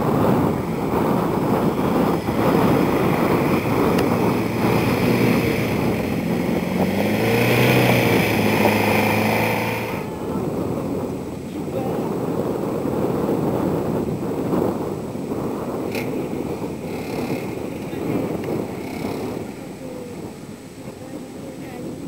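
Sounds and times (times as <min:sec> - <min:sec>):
wind buffeting microphone: 0:00.0 - 0:22.0
small engine running under load: 0:01.8 - 0:10.7.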